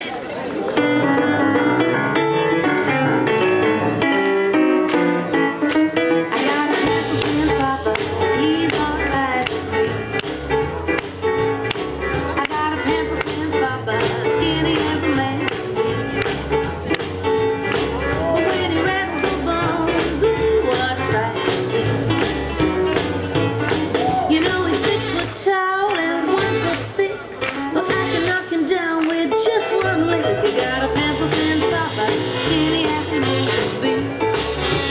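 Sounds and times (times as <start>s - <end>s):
music with bass and drums: 6.4s - 25.2s, 30.4s - 34.9s.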